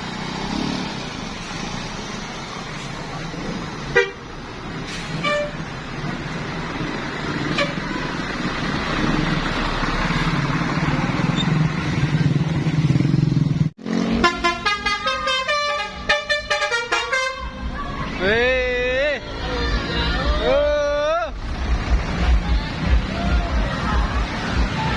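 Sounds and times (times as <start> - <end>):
bus engine and road noise: 0.0 - 24.9
multi-tone bus horn melody: 3.9 - 4.3, 4.9 - 5.7, 7.4 - 8.2, 13.9 - 17.8.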